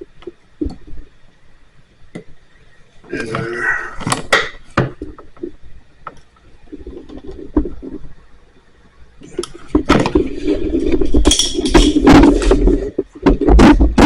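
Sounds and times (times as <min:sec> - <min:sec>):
rustling and scraping handling noise: 0:06.4 - 0:08.2, 0:09.2 - 0:14.0.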